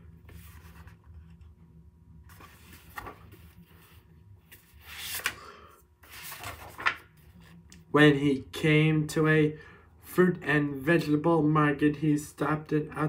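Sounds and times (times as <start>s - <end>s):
low steady hum: 0.0s - 13.0s
book page turning: 0.2s - 1.5s, 2.3s - 7.9s
paper rustling: 2.3s - 7.6s.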